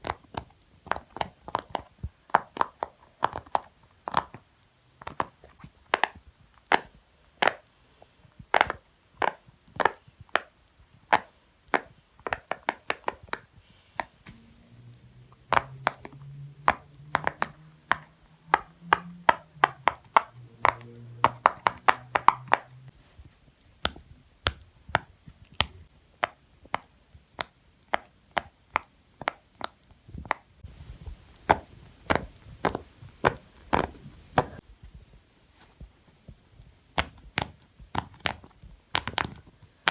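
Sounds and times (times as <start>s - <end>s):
fidget toy bubbles popping: 14.4s - 22.9s.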